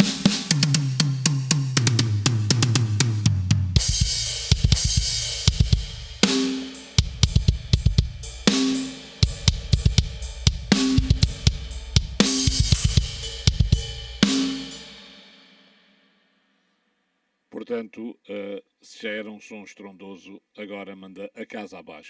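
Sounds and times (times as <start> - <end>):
drum kit playing a groove: 0.0 - 15.6
cymbal ringing out: 8.2 - 15.8.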